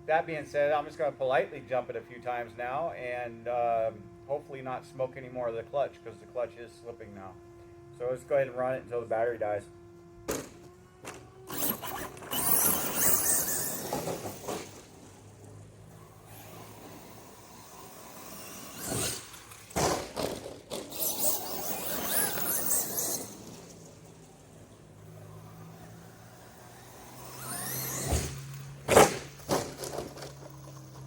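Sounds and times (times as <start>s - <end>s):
rc truck motor whirring: 0.6s - 31.0s.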